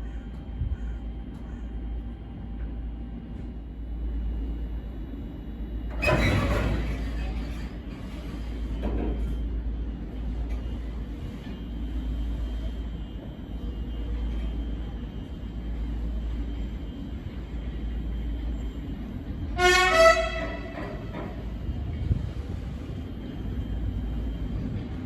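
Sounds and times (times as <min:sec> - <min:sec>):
train rumbling: 0:00.0 - 0:25.0
train horn blast: 0:19.5 - 0:21.2.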